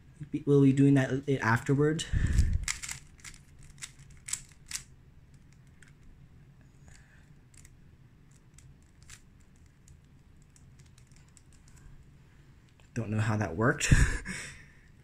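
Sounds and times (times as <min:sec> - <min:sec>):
plastic puzzle cube clicks: 0:02.6 - 0:04.8.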